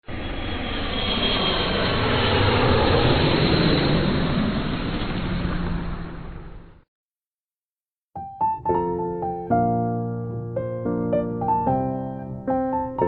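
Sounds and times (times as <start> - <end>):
jet airliner passing: 0.0 - 6.8.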